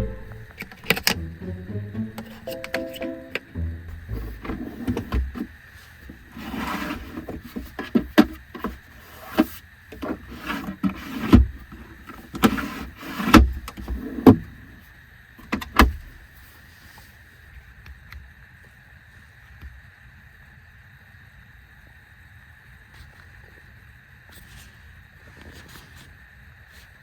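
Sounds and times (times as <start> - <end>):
rustling or sliding: 5.7 - 7.8.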